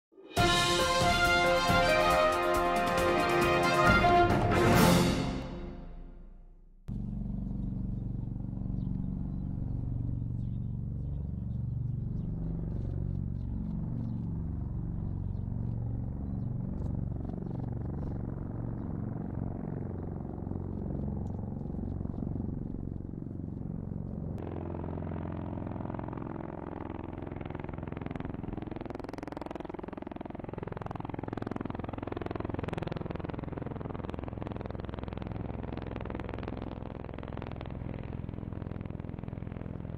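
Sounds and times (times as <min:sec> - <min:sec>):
tiltrotor aircraft flying close: 0:00.4 - 0:06.0, 0:06.9 - 0:39.9.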